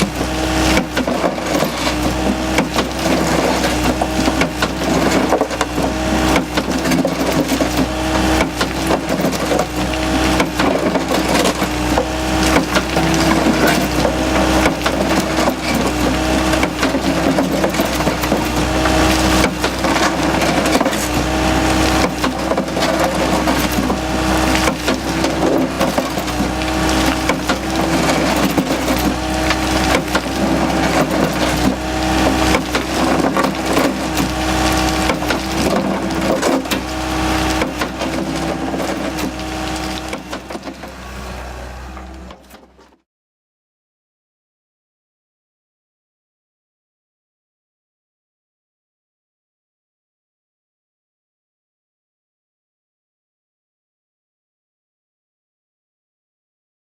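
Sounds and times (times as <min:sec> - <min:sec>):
crusher jaw cracking concrete: 0:00.0 - 0:41.0
excavator engine and hydraulics hum: 0:00.0 - 0:43.0.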